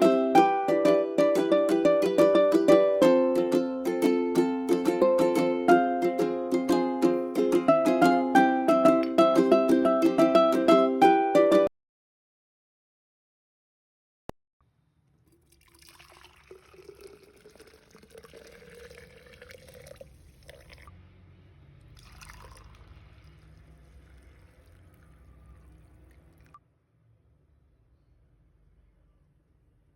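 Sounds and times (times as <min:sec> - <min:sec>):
liquid pouring into container: 0:15.1 - 0:20.9, 0:21.9 - 0:26.6
liquid sloshing: 0:15.1 - 0:20.9, 0:21.9 - 0:26.6.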